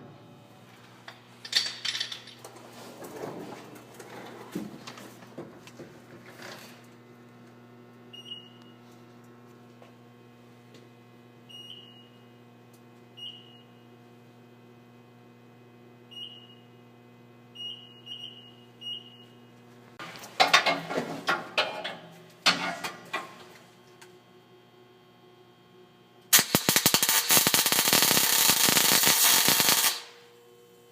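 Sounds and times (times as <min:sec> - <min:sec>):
steady low hum: 0:00.0 - 0:30.9
arc welding crackling: 0:26.3 - 0:30.3.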